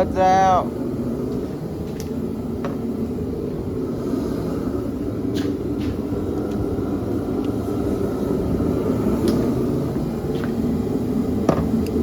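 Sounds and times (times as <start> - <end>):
shop heater rumbling: 0.0 - 12.0.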